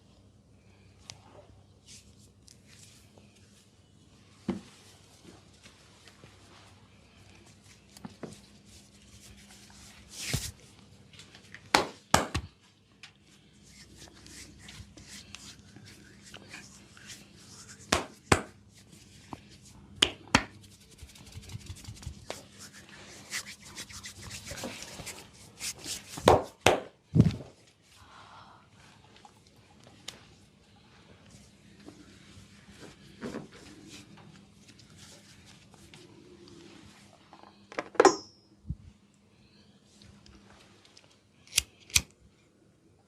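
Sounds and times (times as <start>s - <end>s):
sharp slaps on skin: 11.7s - 12.5s, 17.9s - 18.6s
hands rubbing oil on skin: 13.4s - 19.8s, 20.4s - 26.3s.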